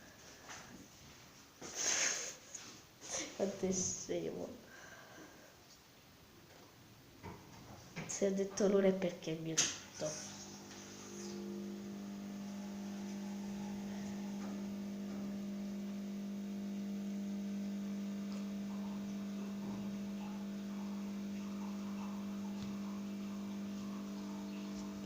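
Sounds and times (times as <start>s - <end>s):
steady low hum: 9.7s - 25.0s.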